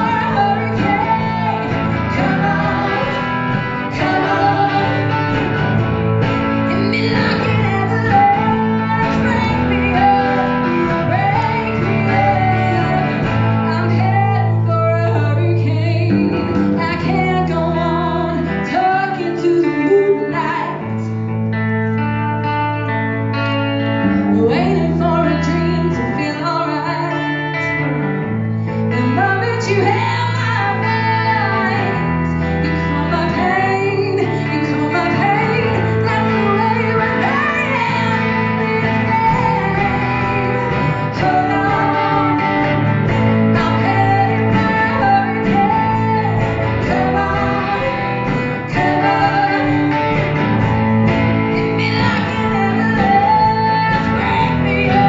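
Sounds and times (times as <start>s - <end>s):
steady bass line: 0.0s - 18.9s, 27.8s - 55.0s
woman singing lead: 0.0s - 22.0s, 22.8s - 55.0s
guitars: 0.0s - 55.0s.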